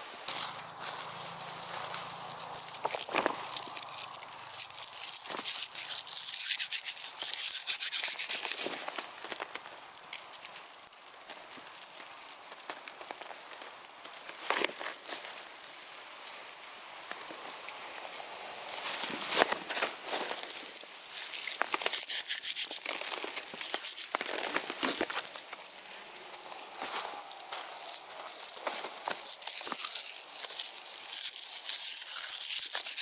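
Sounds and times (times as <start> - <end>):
dry rustling and crackling: 0.1 - 33.0.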